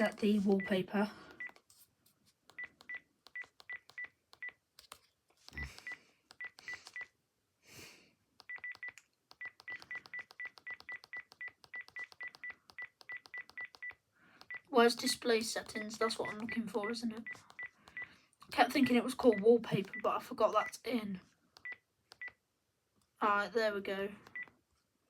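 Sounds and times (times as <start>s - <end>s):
cordless phone key beeps: 2.5s - 4.6s, 8.4s - 14.7s, 16.2s - 18.1s, 21.6s - 22.4s.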